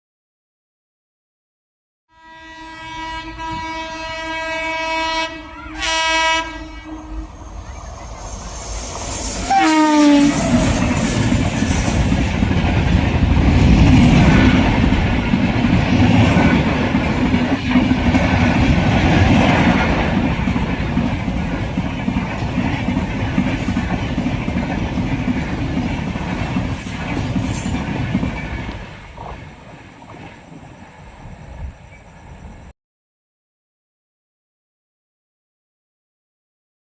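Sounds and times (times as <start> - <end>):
locomotive horn blasts: 2.1 - 7.4, 9.4 - 11.3
train coaches clattering on rails: 7.2 - 32.1.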